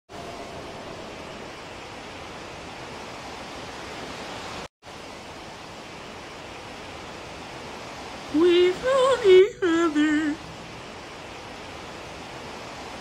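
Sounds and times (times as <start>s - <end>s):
steady hiss: 0.1s - 13.0s.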